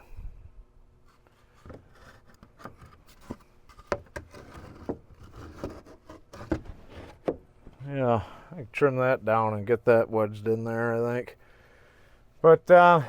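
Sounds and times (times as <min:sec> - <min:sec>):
wood scraping and rubbing: 0:01.1 - 0:07.8.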